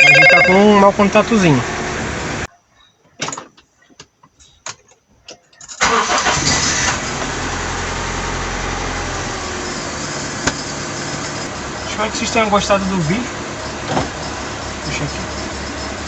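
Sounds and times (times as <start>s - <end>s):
car engine starting and idling: 5.8s - 15.9s.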